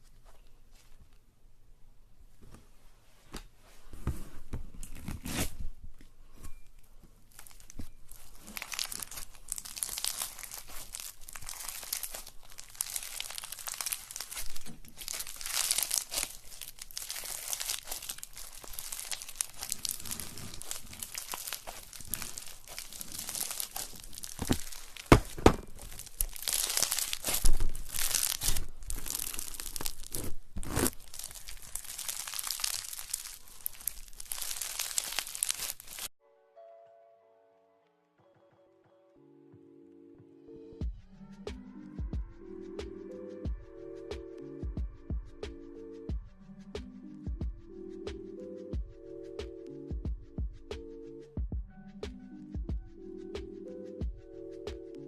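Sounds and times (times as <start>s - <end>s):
slime crackling and crinkling: 4.8s - 5.6s, 7.2s - 36.2s.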